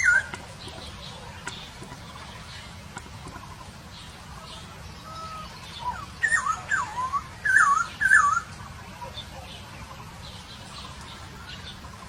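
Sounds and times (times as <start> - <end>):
bird whistling song: 0.0 - 2.7, 3.3 - 8.6.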